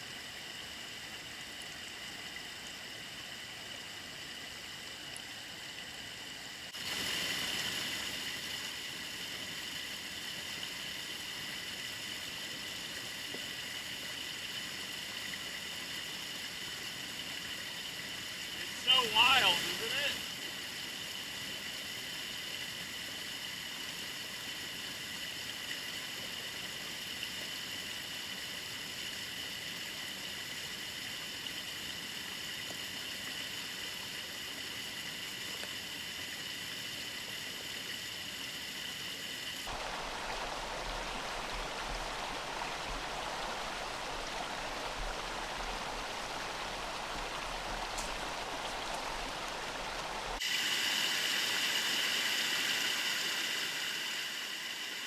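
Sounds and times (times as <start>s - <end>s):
water splashing over rocks: 18.5s - 20.4s, 39.6s - 55.0s.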